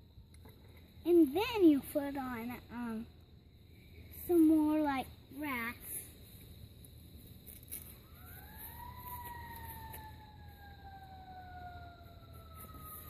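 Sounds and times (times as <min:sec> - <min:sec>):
faint siren wailing: 0:07.8 - 0:13.0.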